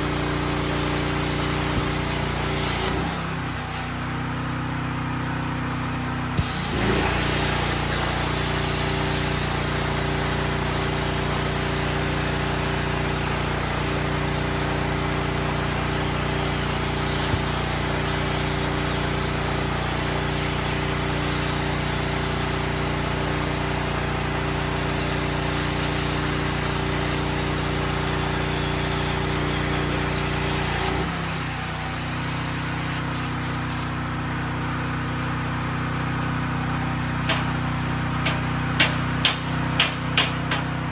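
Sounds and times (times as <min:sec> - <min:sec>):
plasma arc hissing: 0:00.0 - 0:34.9, 0:35.8 - 0:40.9
plasma arc striking pop: 0:06.0 - 0:07.6, 0:37.2 - 0:40.7.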